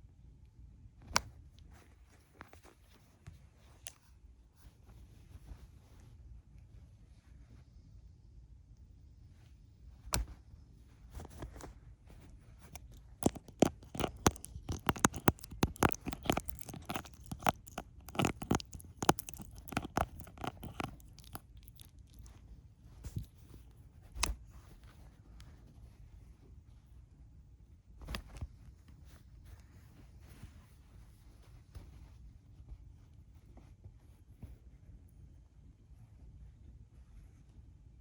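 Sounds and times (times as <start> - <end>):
kitten teeth and claws on microphone: 9.9 - 26.0, 28.0 - 32.2.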